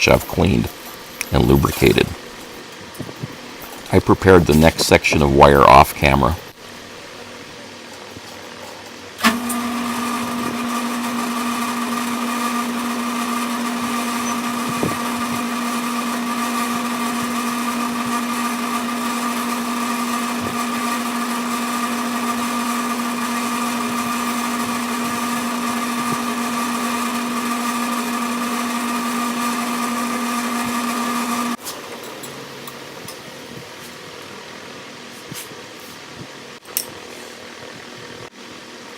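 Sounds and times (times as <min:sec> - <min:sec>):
lathe motor hum and whine: 0:09.2 - 0:31.6.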